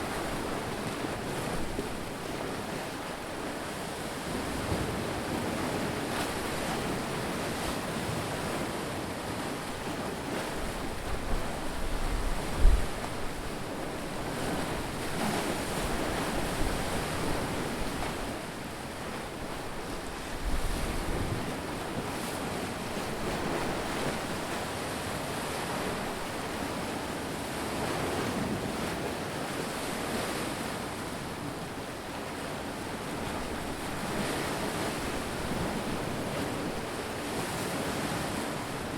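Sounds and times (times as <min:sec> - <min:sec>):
waves breaking: 0:00.0 - 0:38.9
wind buffeting microphone: 0:10.6 - 0:18.2.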